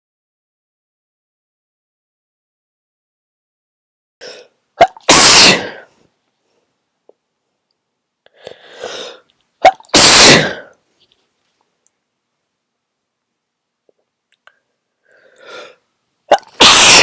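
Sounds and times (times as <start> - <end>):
person sneezing loudly: 4.2 - 5.9, 8.8 - 10.7, 16.3 - 17.0
breathy build-up before sneeze: 4.2 - 6.0, 8.6 - 10.8, 15.4 - 17.0.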